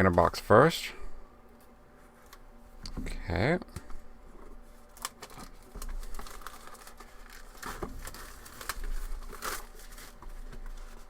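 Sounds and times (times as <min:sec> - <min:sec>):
plastic shrink wrap crinkling: 0:04.8 - 0:11.0.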